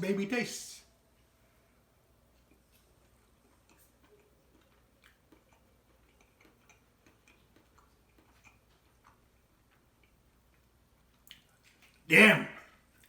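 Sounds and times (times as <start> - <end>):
mouth sounds: 12.1 - 12.8.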